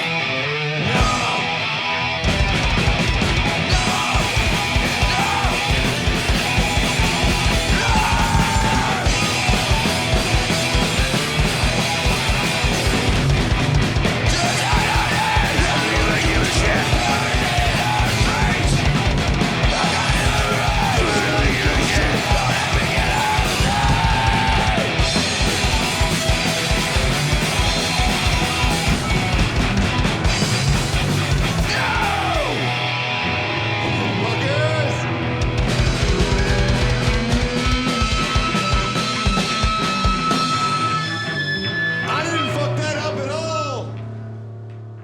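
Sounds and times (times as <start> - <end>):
punk rock band playing: 0.0 - 43.3
distorted guitars: 0.0 - 45.0
shouted vocals: 0.8 - 2.2, 3.4 - 29.4, 31.2 - 33.1
rapid drum beat: 1.0 - 32.9, 35.4 - 40.6.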